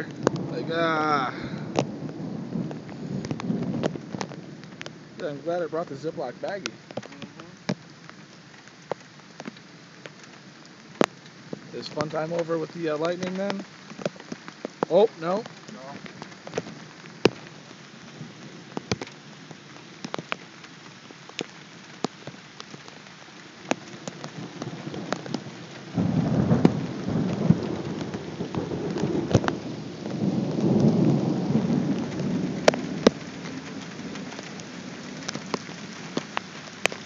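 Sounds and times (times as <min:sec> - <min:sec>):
low rumble of thunder: 0:00.0 - 0:07.4, 0:24.0 - 0:37.0
raindrop ticks: 0:00.0 - 0:37.0
steady rain: 0:00.0 - 0:37.0.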